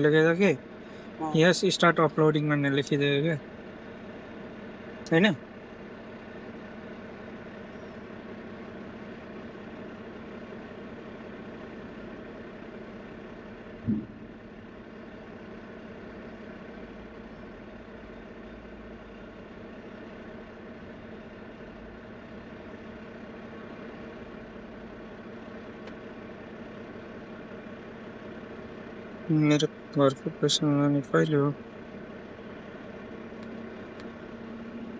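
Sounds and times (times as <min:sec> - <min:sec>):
diesel truck engine idling: 0:00.0 - 0:34.9
short loud blip: 0:13.9 - 0:14.3.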